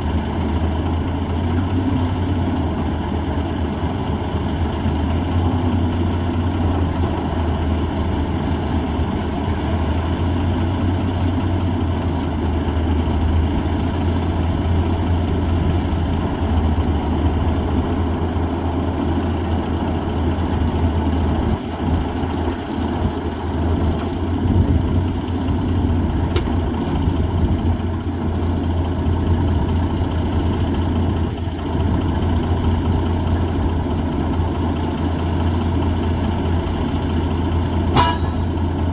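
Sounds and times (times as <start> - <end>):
diesel truck engine running: 0.0 - 38.9.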